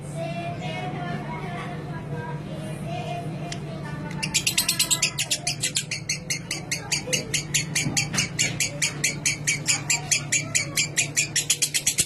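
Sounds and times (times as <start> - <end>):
lovebird chattering trill: 4.2 - 12.0.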